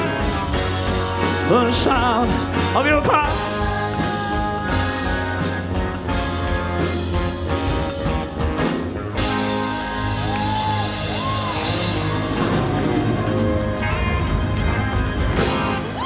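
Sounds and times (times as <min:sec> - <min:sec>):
person singing: 0:00.0 - 0:06.0
live band playing a ballad: 0:00.0 - 0:16.0.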